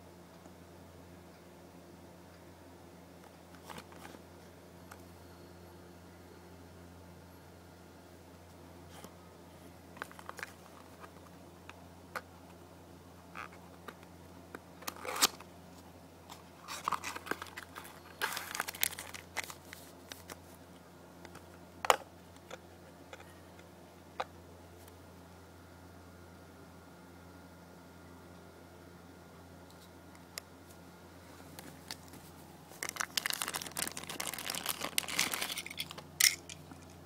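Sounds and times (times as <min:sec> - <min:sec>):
packaging crinkling and rustling: 0:10.0 - 0:11.3, 0:16.3 - 0:20.4, 0:31.4 - 0:37.0.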